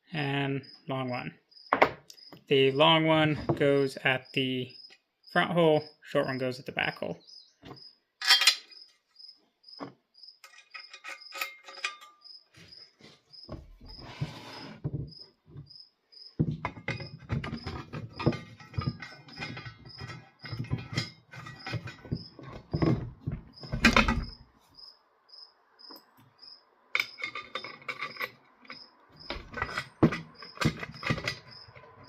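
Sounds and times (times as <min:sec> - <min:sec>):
cricket chirping: 0:00.2 - 0:03.0, 0:03.9 - 0:32.0
small metal parts clicking and rattling: 0:08.2 - 0:08.8, 0:10.4 - 0:12.2, 0:16.6 - 0:23.0, 0:27.0 - 0:32.0.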